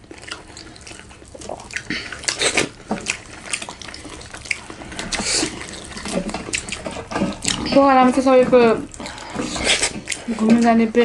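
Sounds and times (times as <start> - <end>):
wet chewing and smacking: 0.0 - 11.0.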